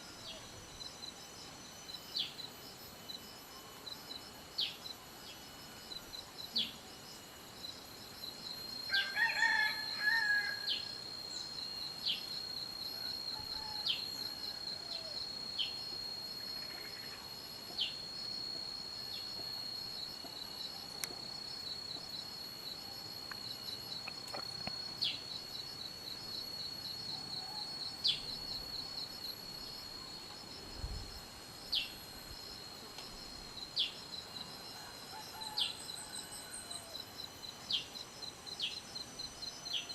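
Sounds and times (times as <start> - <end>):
rooster crowing: 8.9 - 10.9, 13.1 - 15.2, 34.8 - 37.0.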